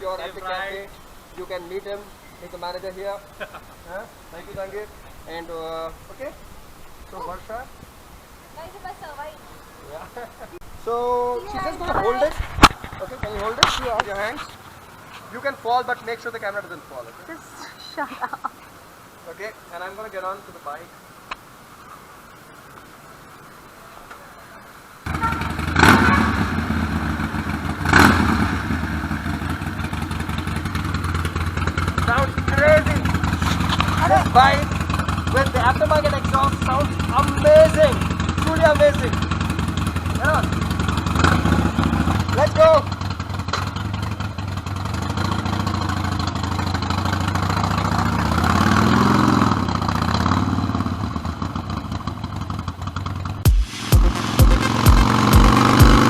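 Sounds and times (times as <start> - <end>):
motorcycle engine starting and revving: 25.1 - 56.0.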